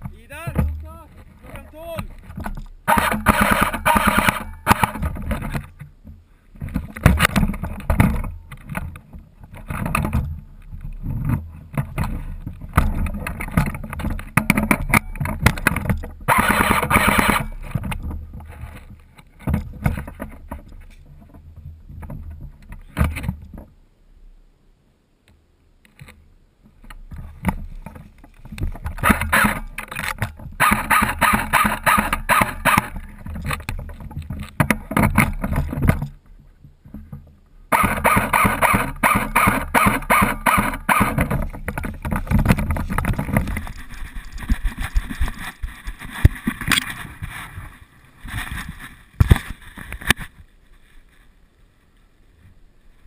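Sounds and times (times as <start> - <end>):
rustling through undergrowth: 26.6 - 53.0.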